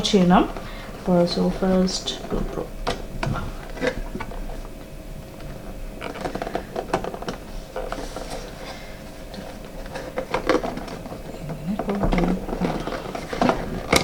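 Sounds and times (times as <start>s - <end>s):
plastic packaging clicks and rattles: 9.3s - 14.0s.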